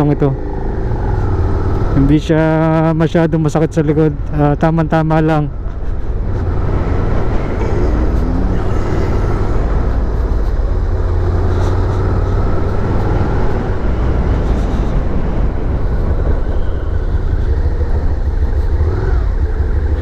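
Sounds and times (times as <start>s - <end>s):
wind rumble on microphone: 0.0s - 20.0s
motorcycle engine running: 5.7s - 20.0s.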